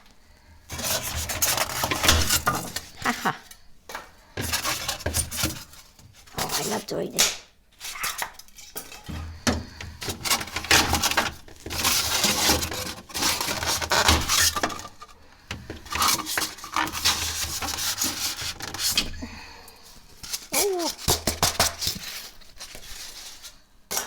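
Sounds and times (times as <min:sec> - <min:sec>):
plastic wrapping rustling: 0:09.6 - 0:19.2, 0:19.9 - 0:24.0.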